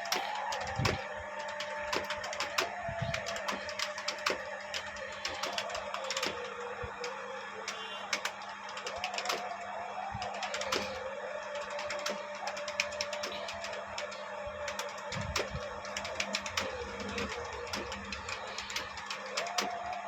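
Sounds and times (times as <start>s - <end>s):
keyboard keys clicking: 0.0s - 20.0s.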